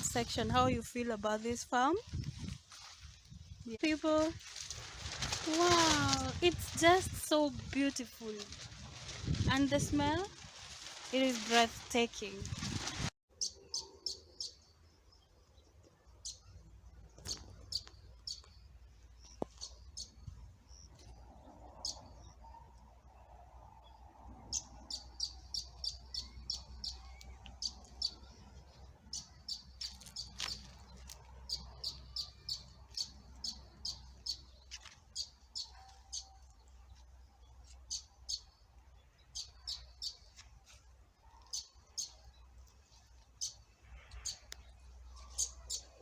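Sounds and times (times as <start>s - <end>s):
birds chirping: 13.3s - 46.0s.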